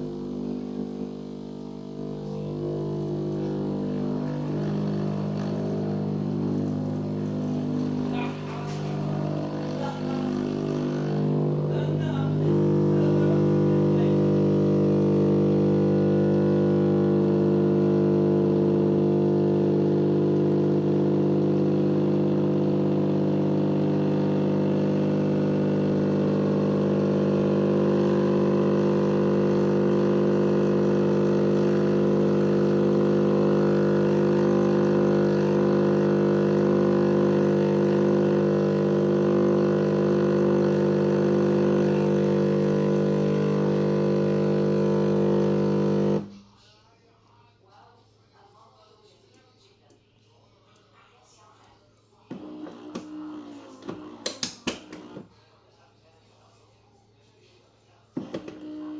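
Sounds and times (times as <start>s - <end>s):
steady low hum: 0.0s - 24.5s.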